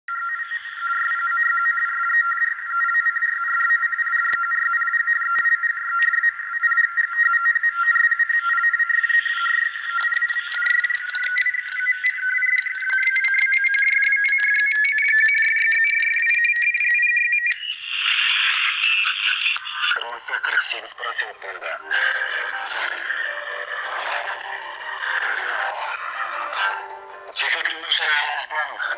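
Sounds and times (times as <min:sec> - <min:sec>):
whistling carrier tones: 0:00.1 - 0:19.0
crackling radio static: 0:00.1 - 0:28.9.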